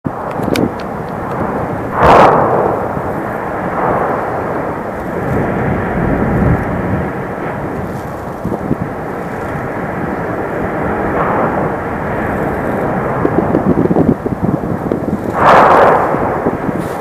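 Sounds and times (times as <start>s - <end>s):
volcano explosive blast: 0.1s - 17.0s
volcano rumbling roar: 0.1s - 17.0s.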